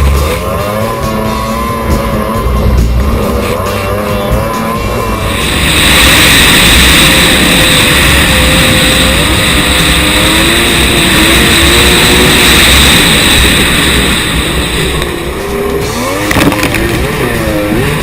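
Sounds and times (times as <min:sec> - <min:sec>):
jet ski engine running: 0:00.0 - 0:18.0
hissing water rush: 0:05.1 - 0:18.0.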